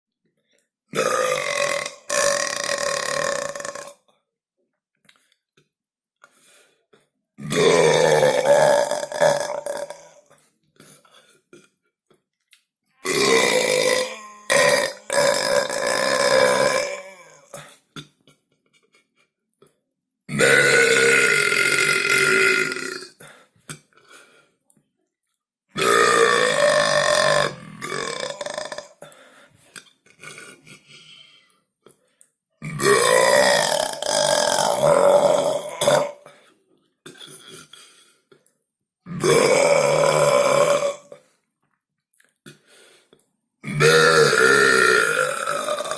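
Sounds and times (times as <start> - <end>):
person belching loudly: 0.9 - 4.0, 7.4 - 10.3, 13.0 - 17.7, 20.3 - 23.2, 25.8 - 29.0, 32.6 - 36.3, 39.0 - 41.2, 43.6 - 45.9.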